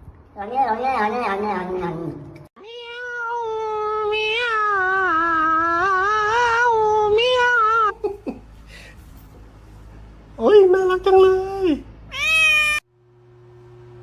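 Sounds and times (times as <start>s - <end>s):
cat yowling: 2.6s - 7.9s, 12.1s - 12.8s.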